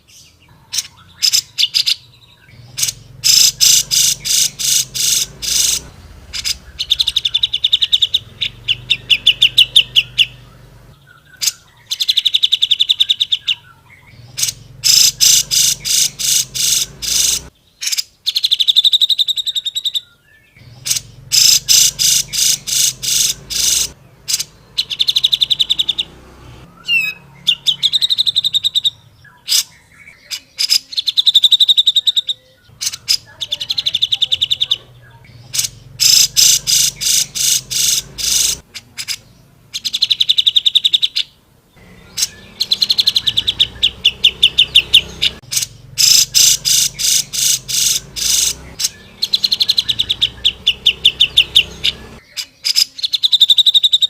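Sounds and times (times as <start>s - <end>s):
bulbul singing sharp trills: 0.0s - 54.0s.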